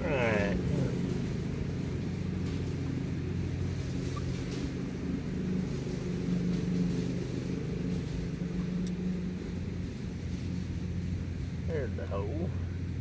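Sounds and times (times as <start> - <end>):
low engine drone: 0.0 - 13.0.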